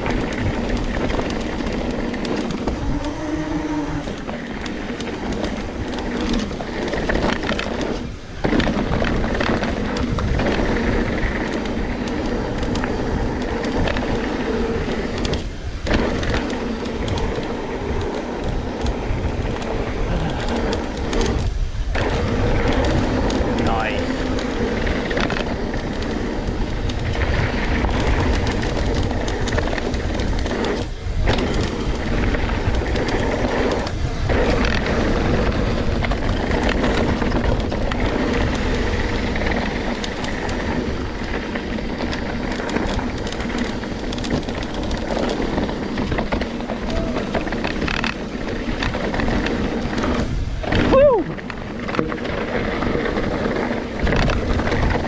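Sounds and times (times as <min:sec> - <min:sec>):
mountain bike rumbling over dirt: 0:00.0 - 0:55.0
small knocks and clatters: 0:39.3 - 0:55.0.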